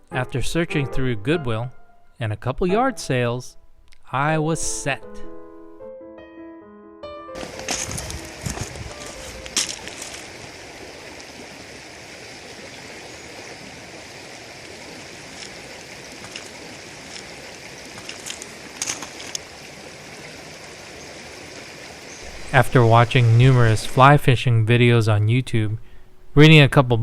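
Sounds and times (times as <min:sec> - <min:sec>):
river water over rocks: 0:07.4 - 0:24.2.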